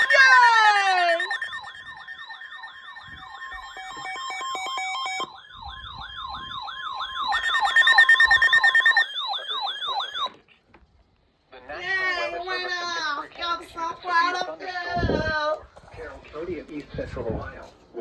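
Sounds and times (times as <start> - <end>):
electronic siren warble: 0.0 - 10.3
electronic siren yelp: 0.0 - 10.4
steady held siren tone: 0.0 - 10.4.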